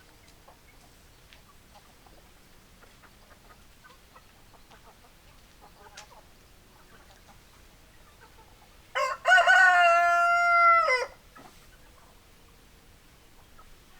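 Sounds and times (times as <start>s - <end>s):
rooster crowing: 9.0s - 11.2s.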